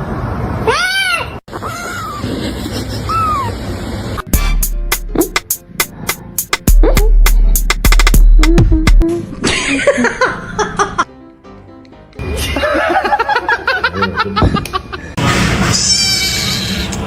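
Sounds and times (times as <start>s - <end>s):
music: 4.3s - 13.3s
people laughing: 9.4s - 11.1s, 12.3s - 15.2s.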